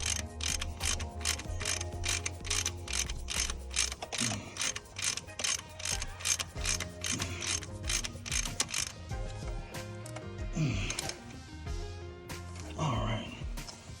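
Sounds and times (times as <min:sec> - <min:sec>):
ratchet wrench clicking: 0:00.0 - 0:09.0.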